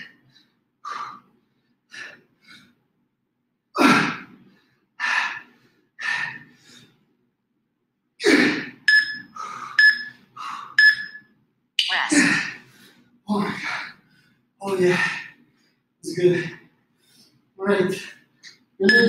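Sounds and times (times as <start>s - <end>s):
man gasping breaths: 3.8s - 7.0s
short electronic beeps: 8.9s - 10.1s, 10.8s - 11.2s.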